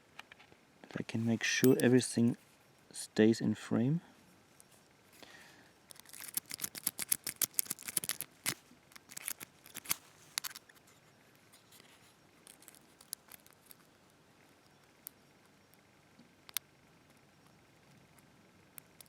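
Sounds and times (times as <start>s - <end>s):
lock pick clicking and scraping: 5.9s - 10.9s, 11.6s - 13.9s.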